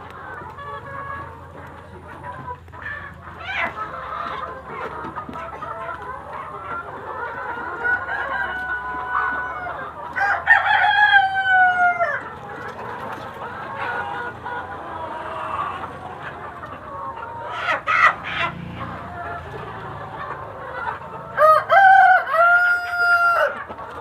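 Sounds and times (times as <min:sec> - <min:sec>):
chickens clucking: 0:00.0 - 0:24.0
rooster crowing: 0:07.9 - 0:12.2, 0:21.4 - 0:23.6.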